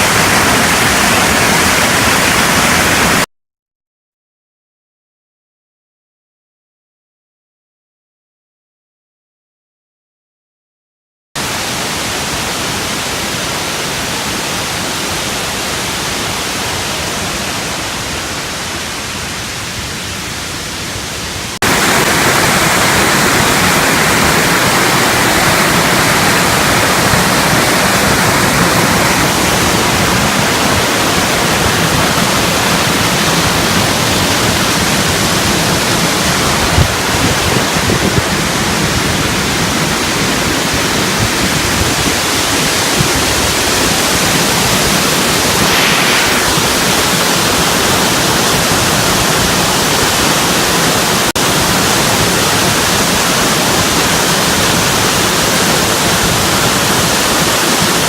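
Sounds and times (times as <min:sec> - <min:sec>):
waterfall rushing: 0:00.0 - 0:03.3, 0:11.4 - 0:58.0.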